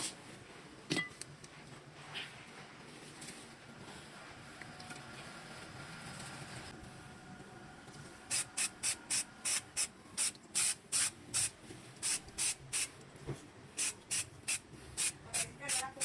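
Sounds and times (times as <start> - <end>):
sprayer hissing bursts: 8.3 - 12.9.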